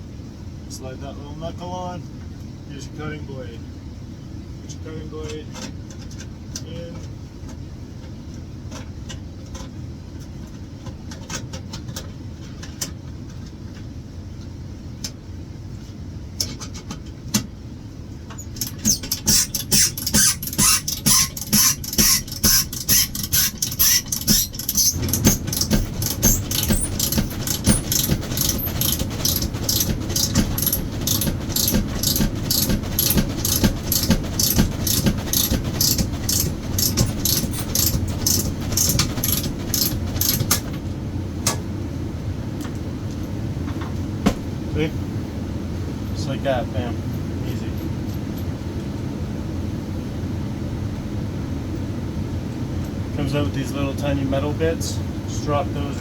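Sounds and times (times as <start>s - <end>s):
knockout punch clicking and creaking: 18.3s - 40.7s.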